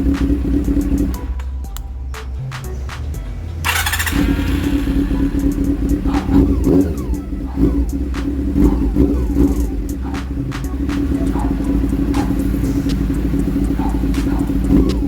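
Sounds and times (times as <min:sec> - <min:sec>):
motorcycle engine running: 0:00.0 - 0:15.0
scattered clicks: 0:09.6 - 0:15.0.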